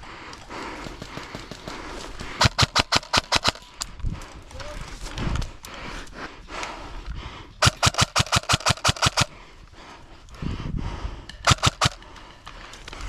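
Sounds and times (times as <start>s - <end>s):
airsoft gun rapid fire: 2.3s - 3.7s, 7.6s - 9.3s, 11.5s - 12.0s.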